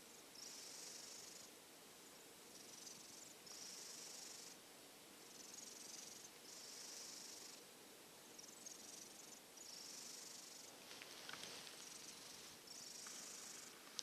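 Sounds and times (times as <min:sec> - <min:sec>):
kitten snoring softly: 0:00.4 - 0:01.5, 0:02.5 - 0:04.6, 0:05.2 - 0:07.6, 0:08.4 - 0:10.7.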